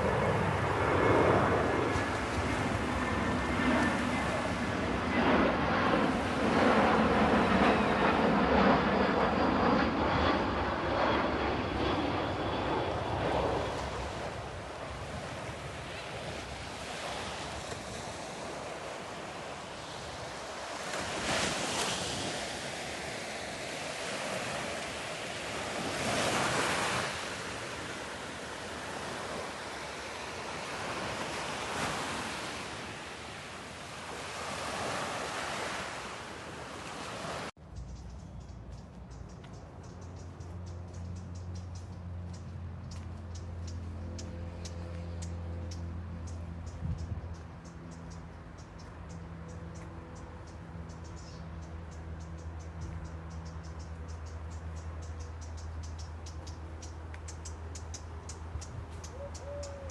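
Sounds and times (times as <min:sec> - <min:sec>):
sea waves washing onto shore: 0:13.8 - 0:37.6
wind on microphone: 0:58.4 - 0:59.9.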